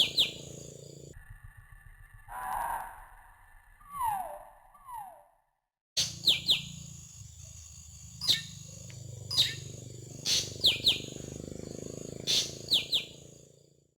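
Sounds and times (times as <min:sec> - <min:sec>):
bird chirping: 0:00.0 - 0:01.1, 0:06.0 - 0:07.5, 0:08.1 - 0:13.5
steady low hum: 0:00.0 - 0:02.1, 0:06.0 - 0:13.7.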